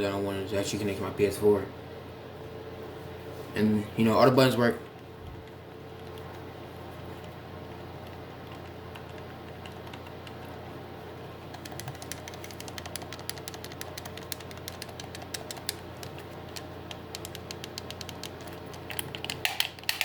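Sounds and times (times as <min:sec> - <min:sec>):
controller buttons clicking: 0:11.5 - 0:20.0.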